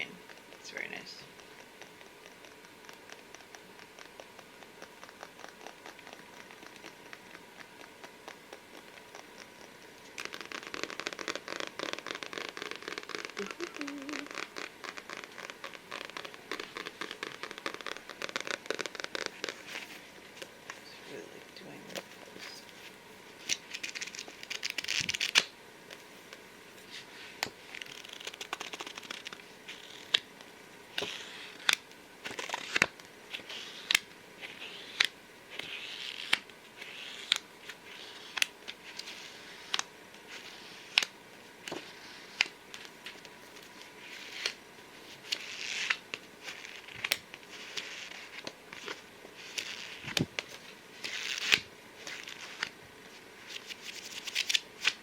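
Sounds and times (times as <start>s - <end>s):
fingers tapping on a book: 1.3s - 19.6s.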